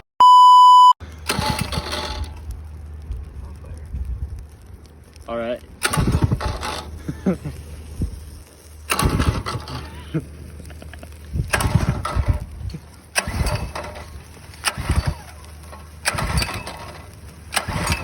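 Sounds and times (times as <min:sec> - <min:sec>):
small engine cranking and dying: 0:01.0 - 0:02.5, 0:05.8 - 0:08.1, 0:08.8 - 0:18.0.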